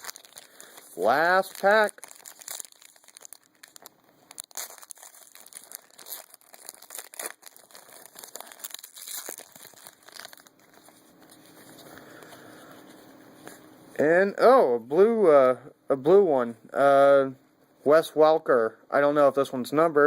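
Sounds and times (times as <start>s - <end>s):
wrapper tearing and crinkling: 0.0s - 12.3s
soft wrapper rustle: 0.0s - 13.7s.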